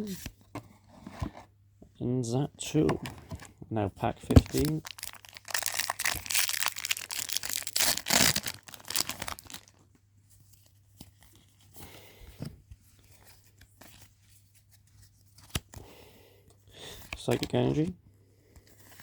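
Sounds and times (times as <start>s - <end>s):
foil wrapper tearing and crinkling: 4.4s - 9.8s.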